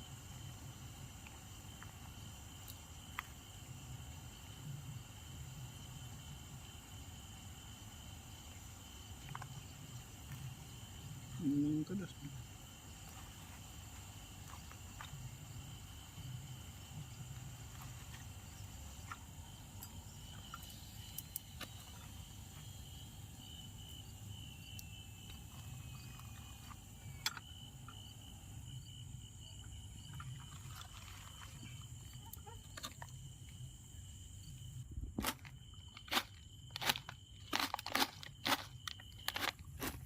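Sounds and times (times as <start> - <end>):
crickets trilling: 0.0 - 40.0
sharp crunches and clicks: 35.2 - 40.0.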